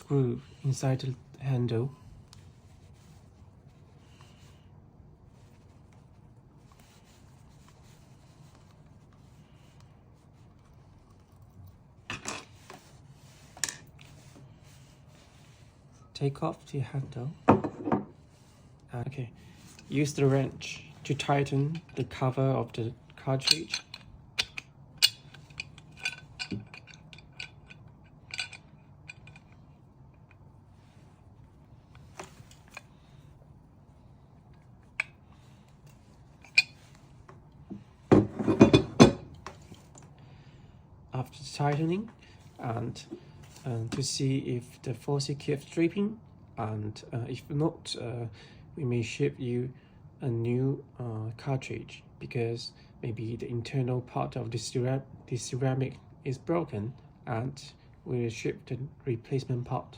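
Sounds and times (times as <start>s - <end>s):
allen key clicking in metal screw: 23.4s - 29.6s.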